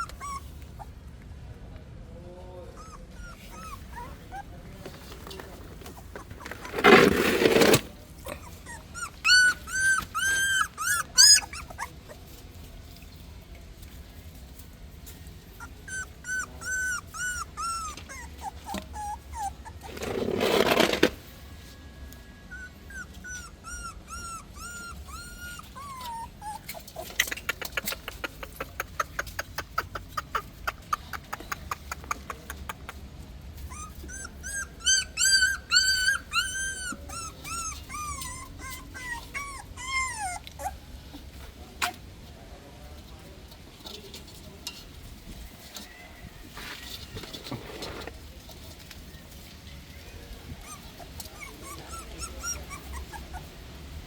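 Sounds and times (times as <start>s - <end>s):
puppies whimpering: 0.0s - 1.0s, 2.7s - 7.7s, 8.3s - 12.3s, 15.6s - 20.9s, 22.5s - 32.7s, 33.6s - 41.2s, 50.3s - 53.6s
loud rustle: 4.8s - 15.6s.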